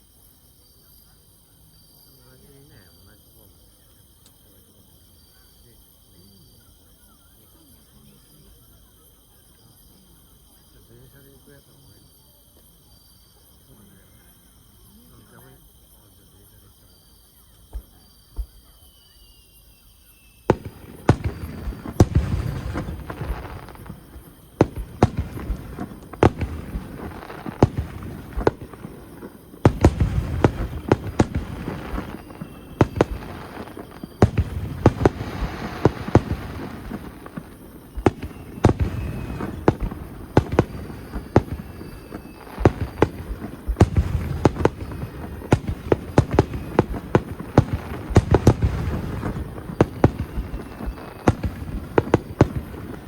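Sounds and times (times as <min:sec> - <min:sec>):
fireworks bangs and crackling: 0:17.7 - 0:18.8, 0:20.4 - 0:53.0.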